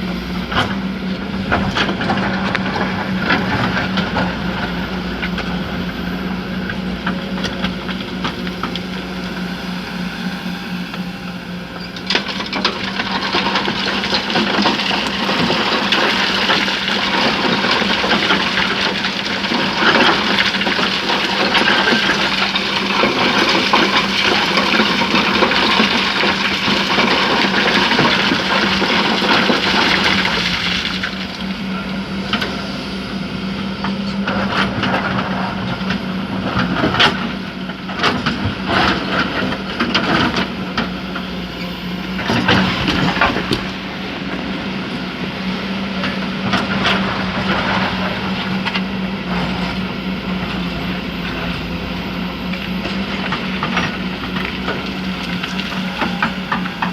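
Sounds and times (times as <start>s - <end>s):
excavator engine humming: 0.0s - 56.9s
rock and steel clanking: 12.0s - 32.7s
sand and stones pouring: 12.2s - 32.3s.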